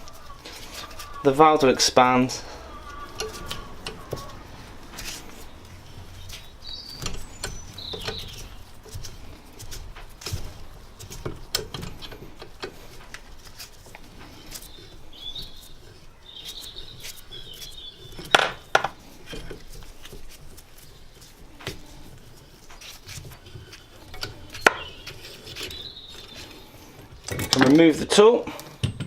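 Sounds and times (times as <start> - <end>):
short high squeaks: 0.0 - 11.1.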